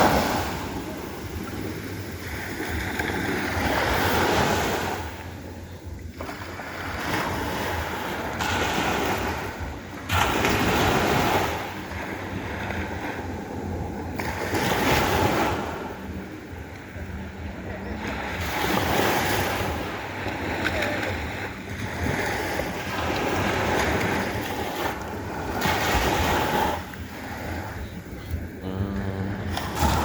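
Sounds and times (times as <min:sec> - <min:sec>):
sea waves breaking: 0:00.0 - 0:30.0
wind rumbling on microphone: 0:00.0 - 0:30.0.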